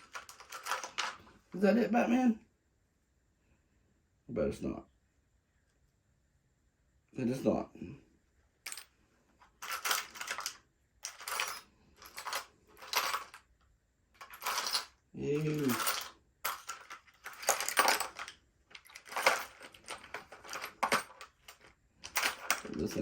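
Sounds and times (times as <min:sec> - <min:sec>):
metal hand tools clinking: 0:00.0 - 0:01.2, 0:09.6 - 0:13.4, 0:14.2 - 0:23.0.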